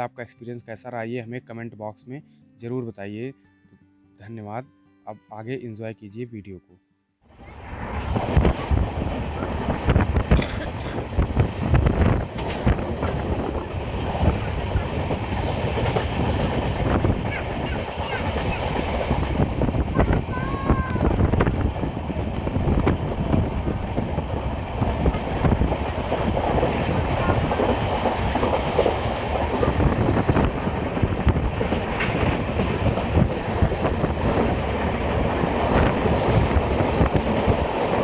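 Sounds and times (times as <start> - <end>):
train coaches rumbling: 7.3 - 38.0
wheels clattering on rails: 7.6 - 20.4, 21.2 - 38.0.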